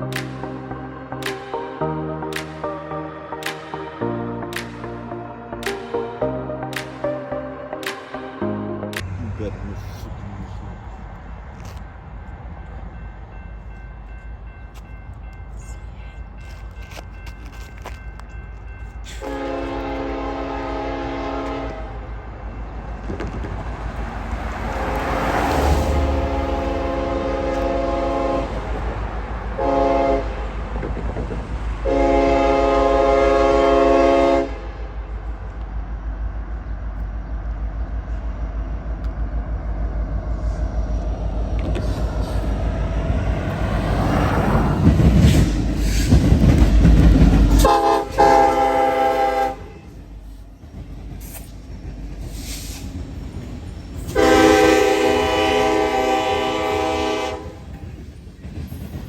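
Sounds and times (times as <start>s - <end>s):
diesel engine rumble: 9.0s - 13.0s
locomotive air horn blasts: 19.1s - 22.0s, 26.0s - 28.7s, 29.6s - 30.4s, 31.8s - 34.8s, 47.6s - 49.9s, 54.1s - 57.7s.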